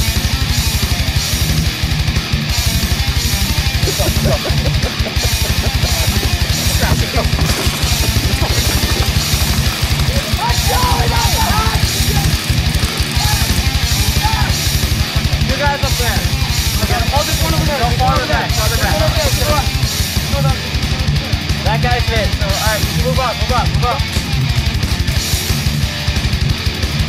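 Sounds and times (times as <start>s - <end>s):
electric guitar: 0.0s - 27.0s
heavy rock music: 0.0s - 27.0s
fast pounding drum beat: 3.6s - 19.8s.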